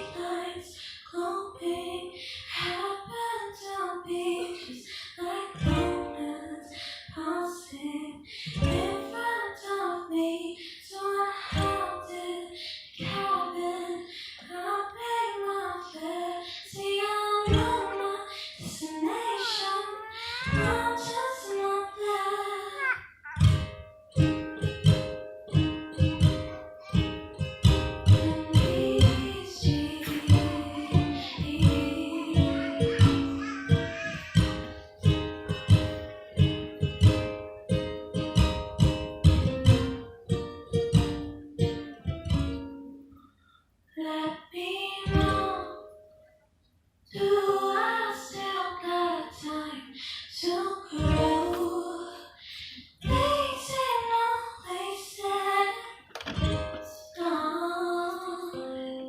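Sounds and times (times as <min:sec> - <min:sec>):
woman singing: 0:00.0 - 0:23.5, 0:28.0 - 0:33.4, 0:44.0 - 0:46.0, 0:47.1 - 0:56.1, 0:56.8 - 0:59.0
strummed acoustic guitar: 0:17.5 - 0:19.6, 0:23.4 - 0:42.9, 0:53.0 - 0:53.8, 0:56.1 - 0:56.9.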